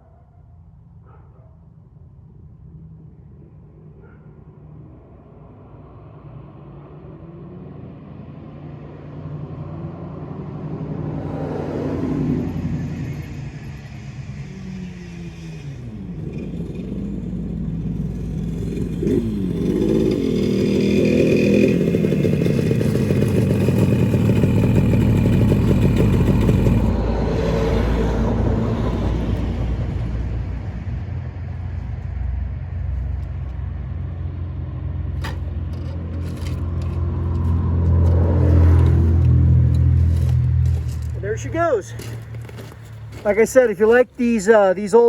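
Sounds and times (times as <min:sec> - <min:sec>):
motorcycle engine revving: 0:09.6 - 0:44.5.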